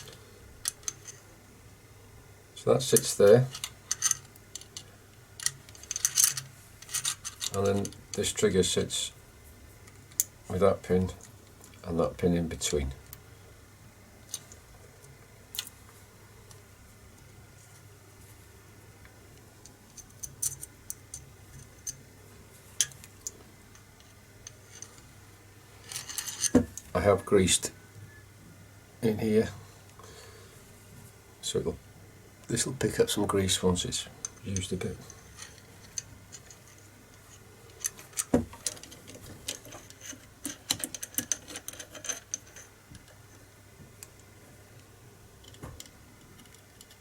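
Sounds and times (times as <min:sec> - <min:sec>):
small metal parts clicking: 0:03.0 - 0:08.2, 0:19.9 - 0:22.0, 0:25.8 - 0:26.8, 0:34.2 - 0:43.2, 0:45.4 - 0:47.0.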